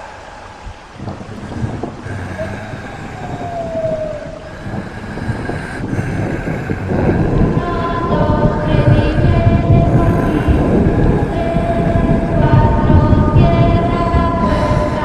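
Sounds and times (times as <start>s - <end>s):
low rumbling noise: 0.0s - 15.0s.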